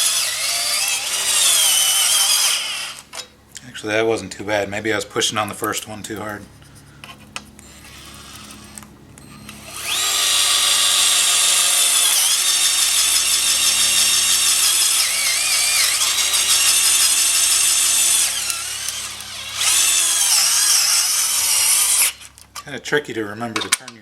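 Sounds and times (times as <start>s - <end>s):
cordless screwdriver whining: 0.0s - 3.3s, 7.1s - 22.5s.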